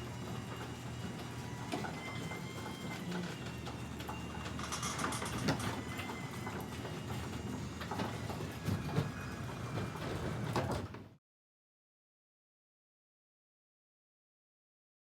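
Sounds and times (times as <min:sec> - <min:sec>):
garage door rolling rumble: 0:00.1 - 0:11.2
garage door rattles and clunks: 0:03.6 - 0:11.0.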